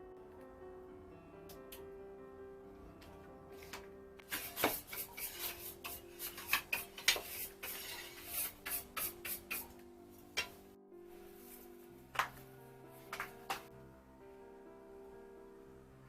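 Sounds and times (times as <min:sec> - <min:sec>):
soft background music: 0:00.0 - 0:16.0
scraping and rubbing noises: 0:03.6 - 0:10.6.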